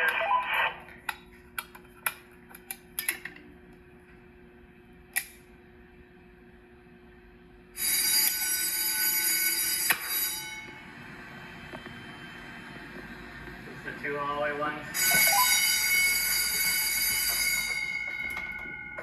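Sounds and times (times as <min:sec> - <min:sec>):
fire alarm ringing: 0:07.8 - 0:11.0, 0:14.7 - 0:19.0
low hum: 0:10.4 - 0:19.0.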